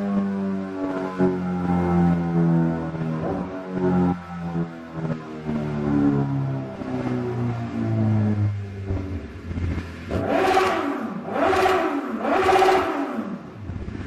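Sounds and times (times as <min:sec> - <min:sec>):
motorcycle engine revving: 0:00.0 - 0:14.0.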